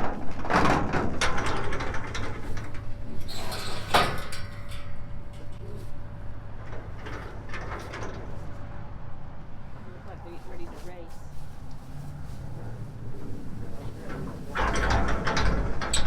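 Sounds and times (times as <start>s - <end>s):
metal gates rattling and knocking: 0.0s - 8.9s, 13.9s - 16.0s.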